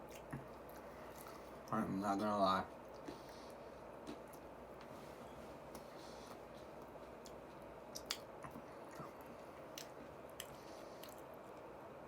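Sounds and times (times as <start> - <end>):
person chewing: 0.0 - 4.5, 5.6 - 11.7
low background hum: 0.0 - 12.0
mouth clicks and smacks: 7.2 - 9.1.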